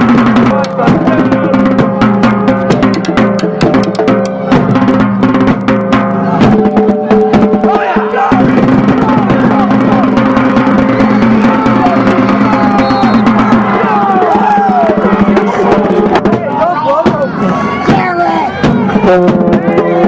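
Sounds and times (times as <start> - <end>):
drum beats: 0.0 - 20.0
voices: 6.3 - 20.0.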